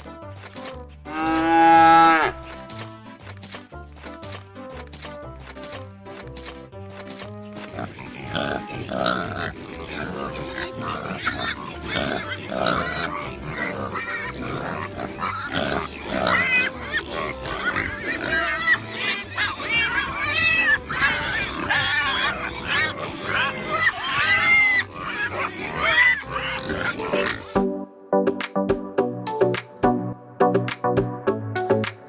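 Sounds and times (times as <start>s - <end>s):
soft background music: 0.0s - 32.0s
pigs squealing and grunting: 1.1s - 2.4s, 7.6s - 27.6s.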